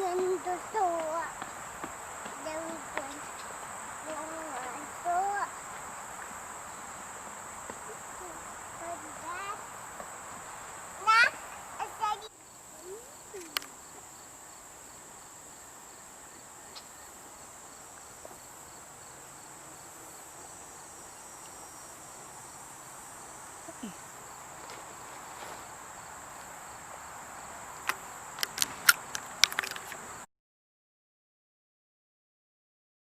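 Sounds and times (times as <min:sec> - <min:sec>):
faint insect chirping: 0:00.0 - 0:30.3
insects droning: 0:00.0 - 0:30.3
sharp clicks: 0:27.8 - 0:30.0.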